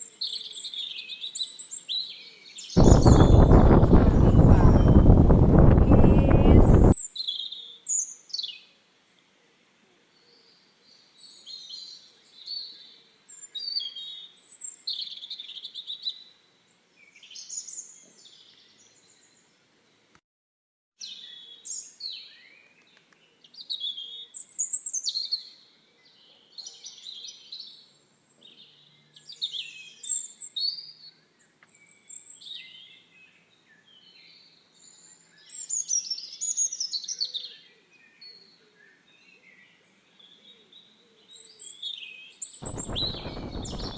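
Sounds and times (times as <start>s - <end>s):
wild birds chirping and whistling: 0.2s - 8.6s, 21.0s - 43.9s.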